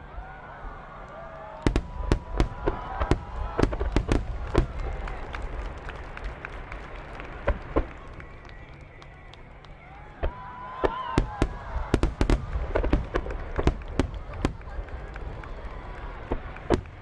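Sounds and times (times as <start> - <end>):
fireworks bangs: 1.6 - 8.3, 10.2 - 17.0.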